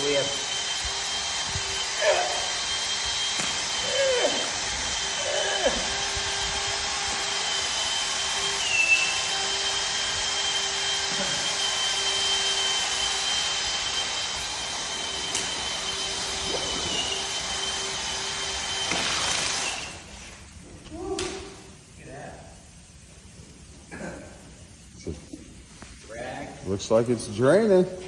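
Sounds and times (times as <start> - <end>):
drain snake motor whining: 0.0 - 21.8.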